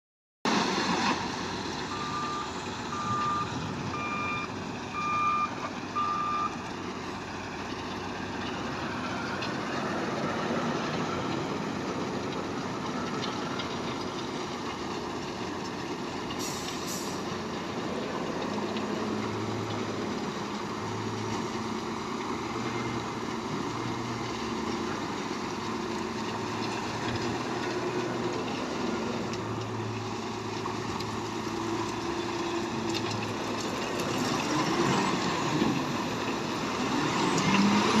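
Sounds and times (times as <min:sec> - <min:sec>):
diesel engine running: 0:01.2 - 0:38.0
reversing alarm beeping: 0:01.9 - 0:06.6.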